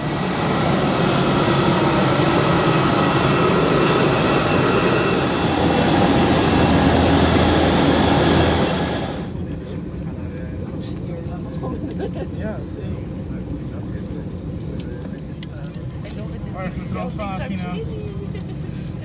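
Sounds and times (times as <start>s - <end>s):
jet engine roaring and whining: 0.0s - 9.5s.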